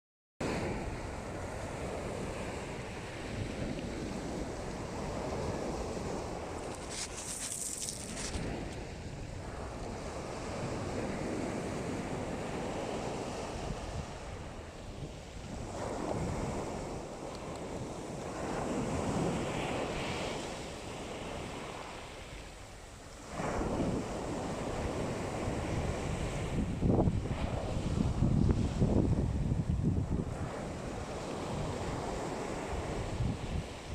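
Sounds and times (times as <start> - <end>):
waves washing onto pebble shore: 1.6 - 14.3.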